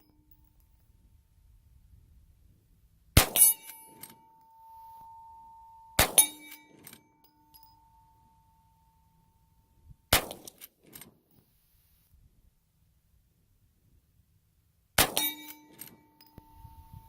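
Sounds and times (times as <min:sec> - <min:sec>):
rifle shots: 0:03.2 - 0:04.2, 0:06.0 - 0:06.6, 0:10.1 - 0:10.6, 0:15.0 - 0:16.0
bullet clanging on steel target: 0:03.2 - 0:05.2, 0:05.8 - 0:08.0, 0:15.0 - 0:16.8.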